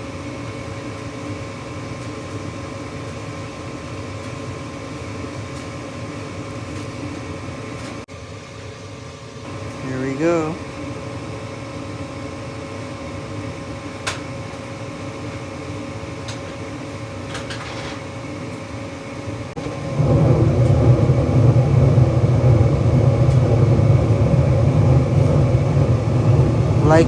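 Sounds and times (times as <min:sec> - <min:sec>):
furnace inducer motor humming: 0:00.0 - 0:27.0
gas burners rushing: 0:19.4 - 0:27.0.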